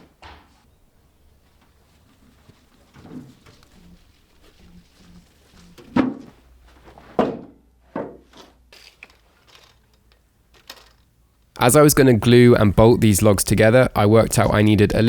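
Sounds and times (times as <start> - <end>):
heavy thunks of wood on wood: 5.9 - 6.4, 7.1 - 8.4.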